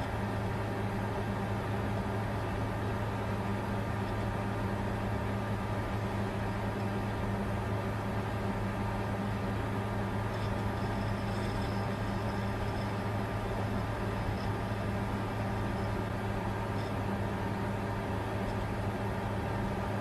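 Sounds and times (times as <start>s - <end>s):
computer humming and whirring: 0.0s - 20.0s
faint high whine: 8.2s - 20.0s.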